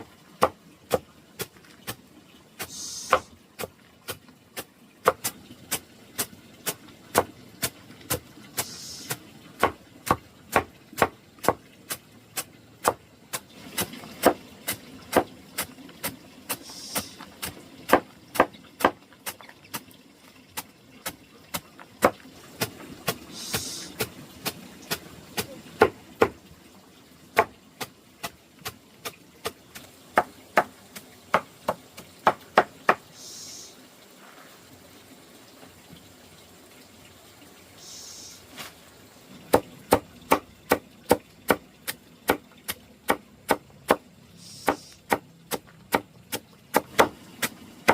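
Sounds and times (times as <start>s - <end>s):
high swishing hisses: 2.6s - 3.3s, 16.6s - 17.2s, 23.3s - 24.0s, 33.1s - 33.8s, 44.4s - 45.0s.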